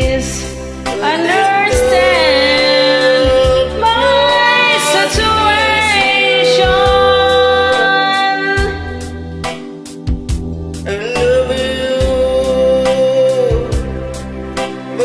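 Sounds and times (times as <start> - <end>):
slow ballad melody: 0.0 - 15.0
repeated low bass note: 1.6 - 4.3, 6.6 - 7.8.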